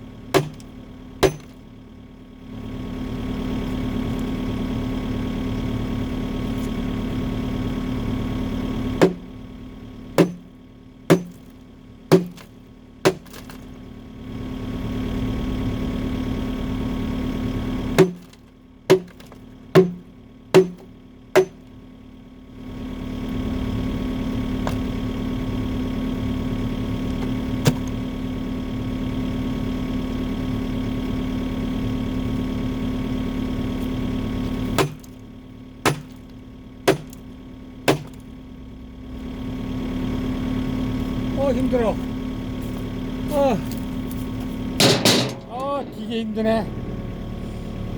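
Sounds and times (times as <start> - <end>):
excavator engine running: 0.0 - 47.9
sledgehammer blows on steel: 44.8 - 46.6.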